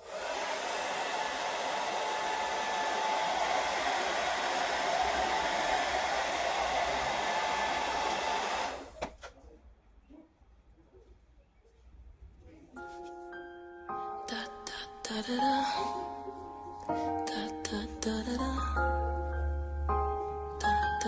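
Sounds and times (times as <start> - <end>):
hair dryer blowing: 0.0 - 9.0.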